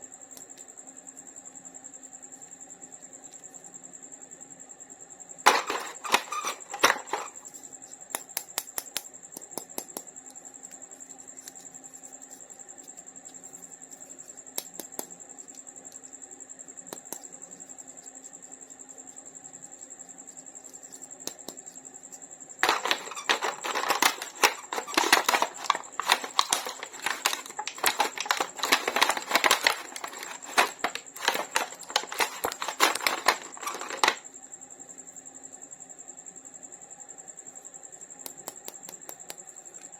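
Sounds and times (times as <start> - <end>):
toy packaging clicks and taps: 5.5 - 7.3, 22.6 - 34.2
plastic crinkling: 5.5 - 7.4, 22.6 - 34.2.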